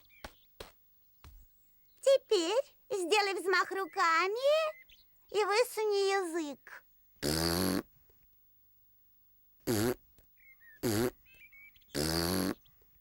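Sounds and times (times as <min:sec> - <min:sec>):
faint bird chirps: 0:00.0 - 0:06.9, 0:10.3 - 0:13.0.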